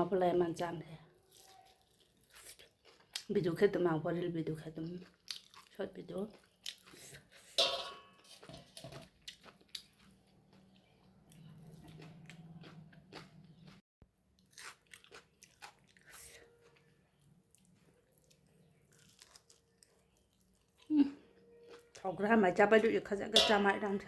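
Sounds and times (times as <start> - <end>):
crunchy chewing: 1.2 - 3.3, 4.8 - 7.6, 8.2 - 13.8, 14.4 - 22.0.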